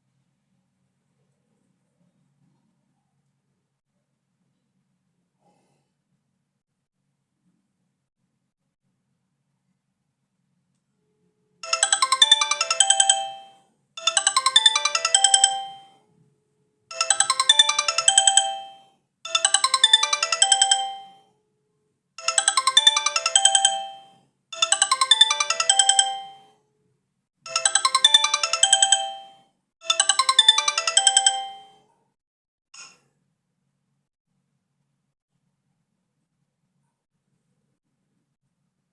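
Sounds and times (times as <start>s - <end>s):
phone ringtone electronic melody: 11.6s - 16.0s, 16.9s - 21.2s, 22.2s - 26.5s, 27.5s - 31.8s.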